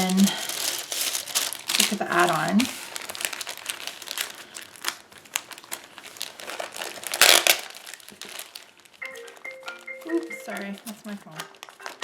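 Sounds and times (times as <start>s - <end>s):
packaging crinkling: 0.0s - 12.0s.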